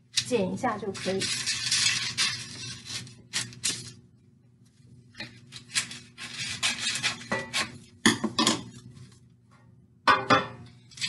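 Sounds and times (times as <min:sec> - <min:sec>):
paper crinkling: 0:00.2 - 0:04.0, 0:04.6 - 0:07.8
scissors snipping paper: 0:05.5 - 0:07.7.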